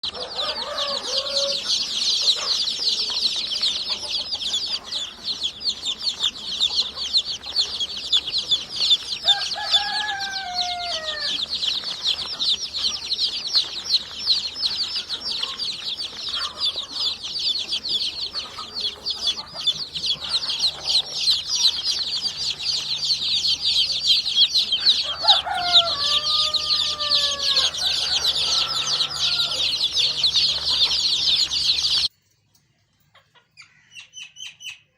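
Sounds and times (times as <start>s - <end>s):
chicks peeping: 0.0s - 32.1s, 33.1s - 34.9s
hen calling: 16.3s - 32.0s.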